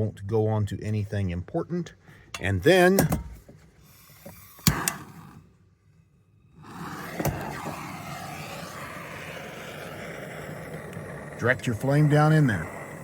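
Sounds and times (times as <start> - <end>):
gas torch hissing: 3.8 - 5.5, 6.3 - 13.0.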